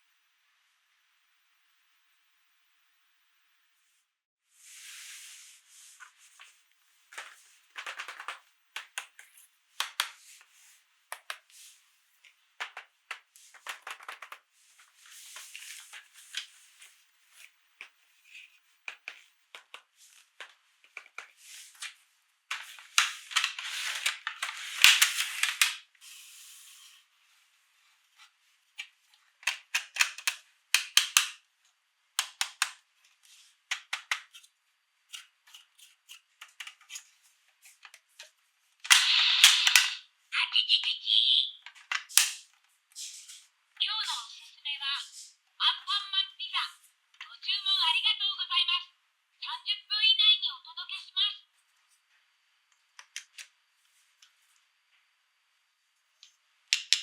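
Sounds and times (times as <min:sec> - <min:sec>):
toys clicking and tapping: 0:07.2 - 0:10.2, 0:12.6 - 0:14.4, 0:29.4 - 0:31.4, 0:32.2 - 0:32.8, 0:38.9 - 0:40.0.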